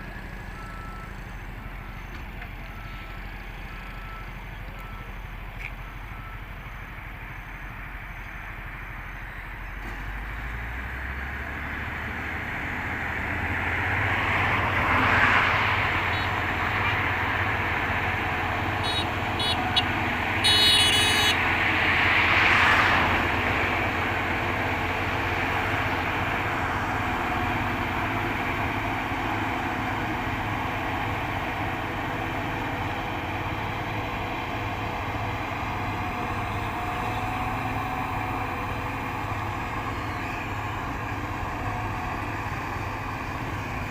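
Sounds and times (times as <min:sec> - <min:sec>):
harvester engine humming: 0:00.0 - 0:43.9
high horn beeps: 0:16.0 - 0:17.0, 0:18.7 - 0:21.5.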